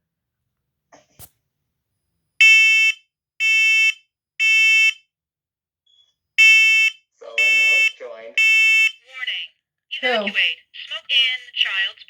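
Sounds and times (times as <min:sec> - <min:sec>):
smoke alarm beeps: 0:02.4 - 0:05.0, 0:06.4 - 0:09.0.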